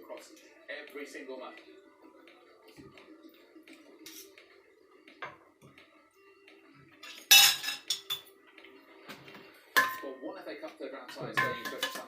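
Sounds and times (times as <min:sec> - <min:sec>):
cutlery clattering against dishes: 0:07.0 - 0:08.4, 0:09.8 - 0:10.1, 0:11.1 - 0:12.0.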